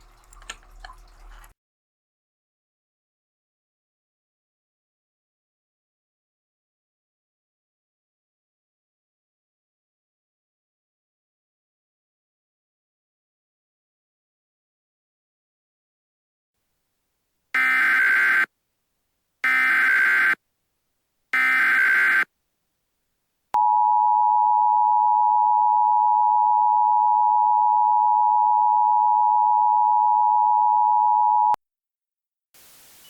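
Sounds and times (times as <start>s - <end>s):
steady two-tone beep: 23.6s - 31.6s.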